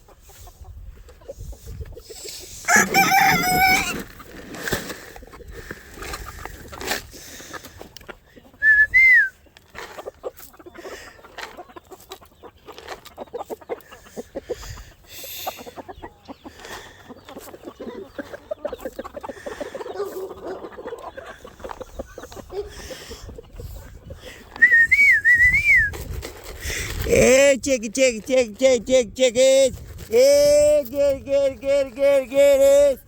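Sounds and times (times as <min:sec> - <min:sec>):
chickens clucking: 0:00.0 - 0:27.3.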